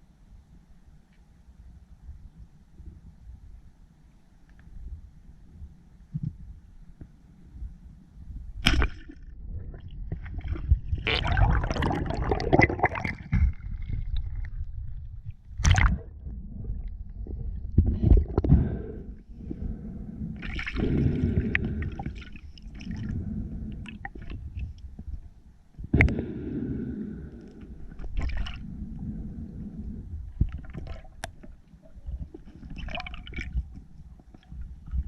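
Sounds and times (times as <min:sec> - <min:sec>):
water sloshing and gurgling: 0:08.6 - 0:35.0.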